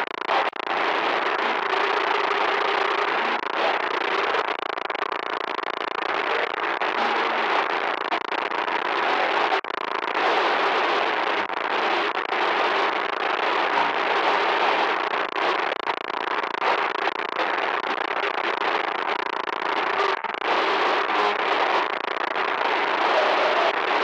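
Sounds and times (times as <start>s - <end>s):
harsh crackling static: 0.0s - 24.0s.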